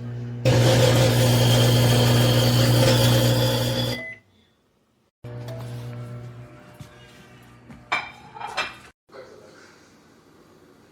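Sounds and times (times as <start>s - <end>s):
microwave oven humming: 0.0s - 4.3s.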